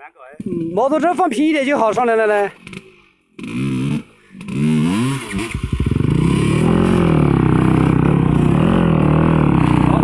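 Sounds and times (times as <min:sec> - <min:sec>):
off-road motorcycle engine revving: 0:02.5 - 0:10.0.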